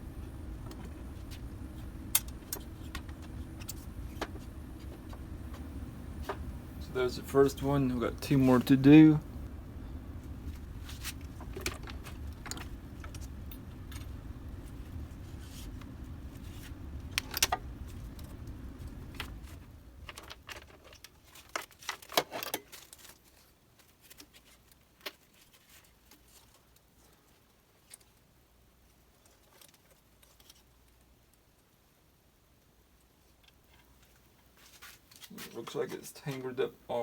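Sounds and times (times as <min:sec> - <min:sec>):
low steady hum: 0:00.0 - 0:21.3.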